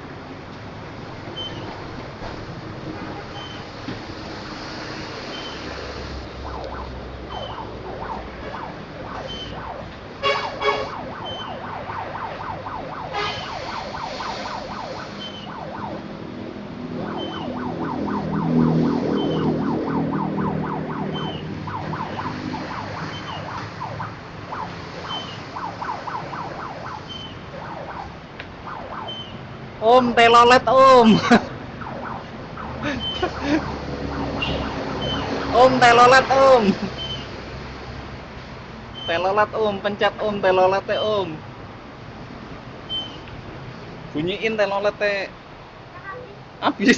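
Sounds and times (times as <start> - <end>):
heavy vehicle rumble: 0.0 - 39.8, 41.4 - 44.2
road traffic: 0.0 - 46.9
siren-like warbling horn: 3.1 - 29.5, 30.1 - 37.1
loud horn blasts: 10.2 - 11.0, 13.1 - 13.5.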